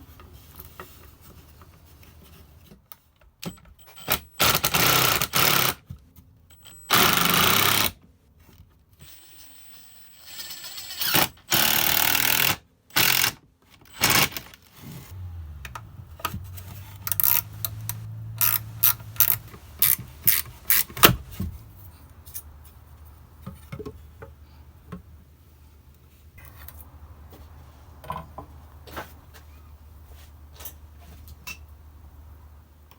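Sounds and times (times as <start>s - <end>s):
low motor hum: 15.1s - 23.4s
power tool running: 15.2s - 21.4s
wooden parts clicking and knocking: 15.6s - 21.6s.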